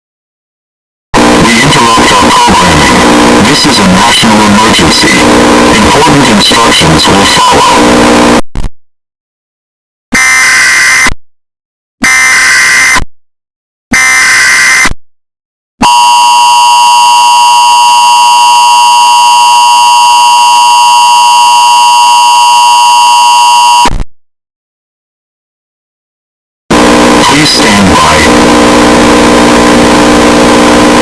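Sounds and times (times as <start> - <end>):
harsh two-tone alert signal: 7.0 - 7.9, 14.0 - 15.0, 15.8 - 23.9
screeching digital data bursts: 10.2 - 11.1, 12.0 - 13.0, 14.0 - 14.9.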